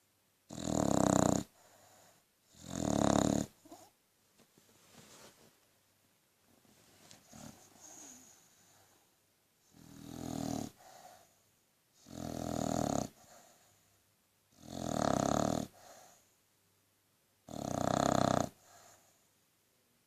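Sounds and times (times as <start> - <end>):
dog snoring: 0.5 - 3.9, 7.2 - 9.0, 9.6 - 11.4, 12.0 - 13.9, 14.5 - 16.3, 17.5 - 19.2
soft breath: 1.5 - 2.3, 6.7 - 9.2, 10.7 - 11.6, 13.2 - 14.1, 18.6 - 19.4.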